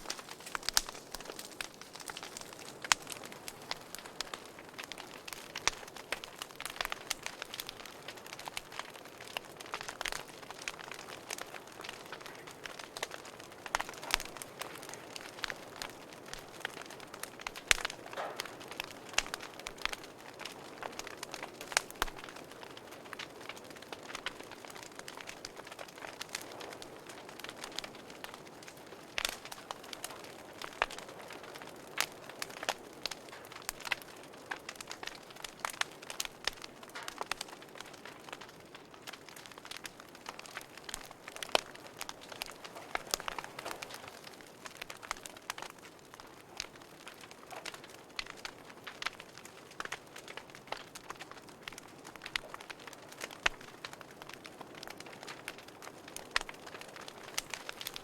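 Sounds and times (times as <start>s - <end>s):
fire crackling and popping: 0.0s - 58.0s
soft steady hiss: 0.0s - 58.0s.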